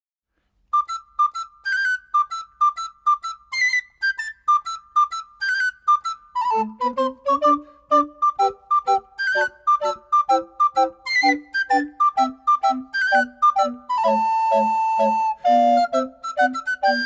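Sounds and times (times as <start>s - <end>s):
bright staccato music: 6.5s - 17.0s.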